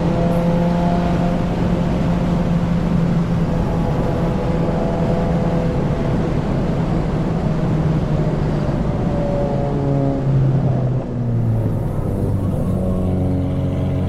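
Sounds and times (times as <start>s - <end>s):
car engine pulling: 0.0s - 4.3s, 11.3s - 14.0s
road and wind noise: 0.0s - 14.0s.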